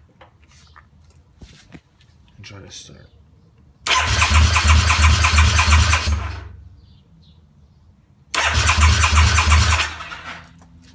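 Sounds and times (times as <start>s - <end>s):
motorcycle engine cranking on starter: 3.9s - 6.5s, 8.4s - 10.5s.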